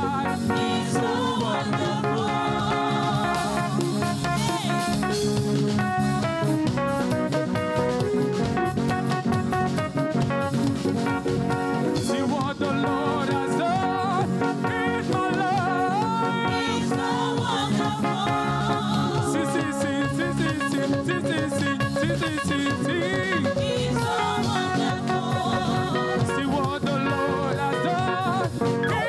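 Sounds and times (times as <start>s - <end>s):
singing: 0.0s - 4.9s, 12.0s - 29.0s
church band playing: 0.0s - 29.0s.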